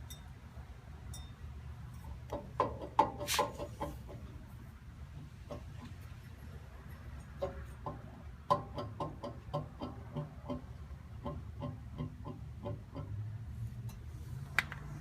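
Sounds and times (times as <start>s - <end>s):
wheel bearing clicking: 5.1s - 14.9s.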